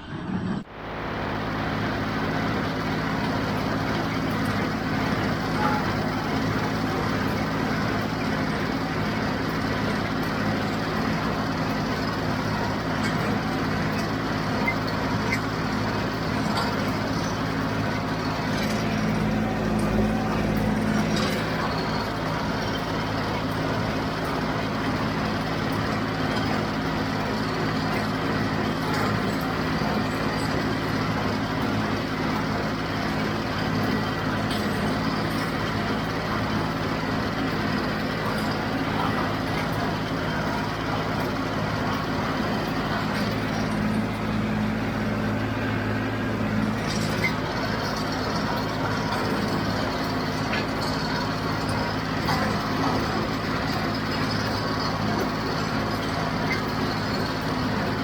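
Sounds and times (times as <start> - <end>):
tractor diesel engine under load: 0.0 - 58.0
faint machinery clicks: 2.4 - 58.0.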